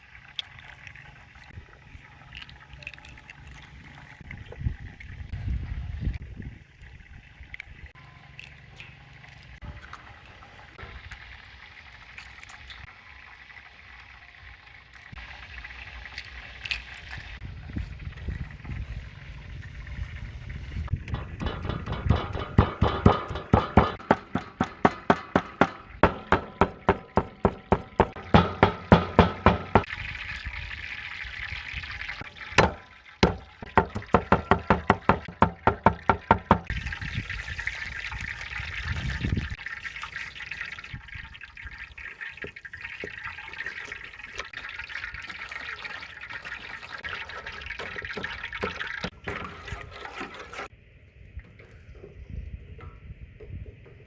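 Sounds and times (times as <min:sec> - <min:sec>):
knife chopping on cutting board: 0:21.4 - 0:29.9.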